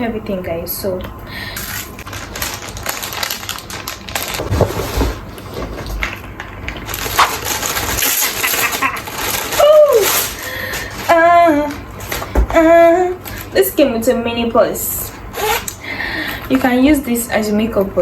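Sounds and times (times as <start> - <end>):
packaging crinkling and rustling: 1.6 - 13.8.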